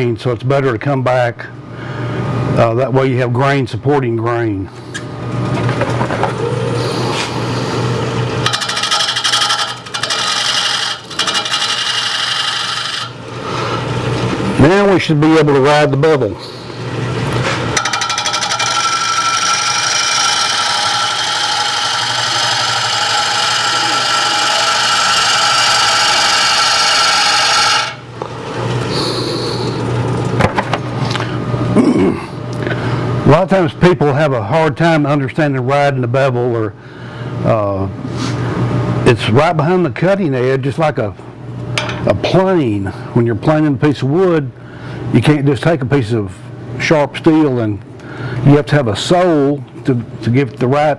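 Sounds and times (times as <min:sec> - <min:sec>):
lathe motor hum: 0:06.6 - 0:14.5, 0:17.3 - 0:28.1
gouge rattling on spinning wood: 0:08.4 - 0:13.2, 0:17.8 - 0:28.0
lathe tool cutting wood hiss: 0:17.8 - 0:28.0.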